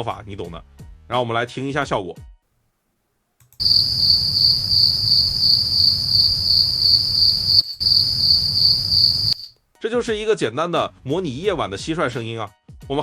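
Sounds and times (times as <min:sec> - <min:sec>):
crickets chirring: 0:03.6 - 0:09.5.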